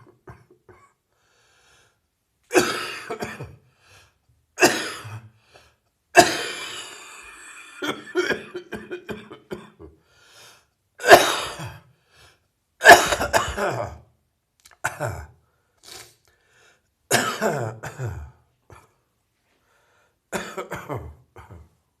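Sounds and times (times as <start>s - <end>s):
person coughing: 0.0s - 1.0s, 2.5s - 3.6s, 4.6s - 5.3s, 6.2s - 9.9s, 11.0s - 11.9s, 12.8s - 14.1s, 14.8s - 15.4s, 17.1s - 19.0s, 20.4s - 21.8s.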